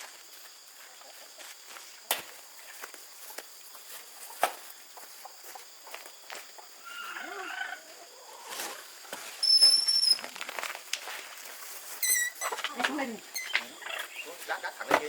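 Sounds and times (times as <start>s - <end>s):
bird calls: 12.1s - 14.8s.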